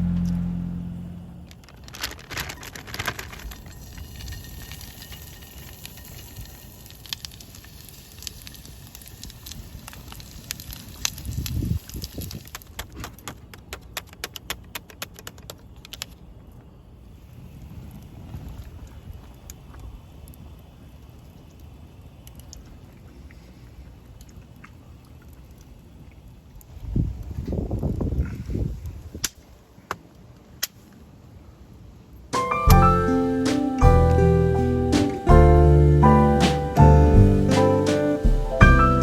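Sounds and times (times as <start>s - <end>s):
wind rumble on microphone: 10.8s - 12.8s, 17.2s - 20.1s, 26.6s - 29.4s.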